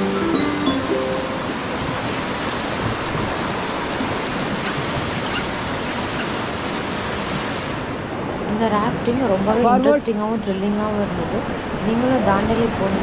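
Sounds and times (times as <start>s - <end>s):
whitewater rushing: 0.0s - 7.9s.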